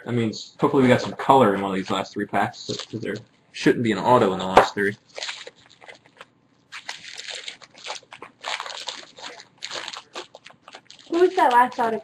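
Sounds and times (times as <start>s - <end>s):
card pack wrapper crinkling: 2.6s - 3.2s, 4.2s - 12.0s.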